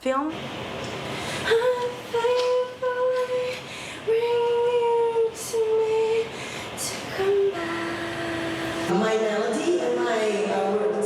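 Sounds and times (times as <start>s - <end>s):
woman singing wordless melody: 1.3s - 9.2s.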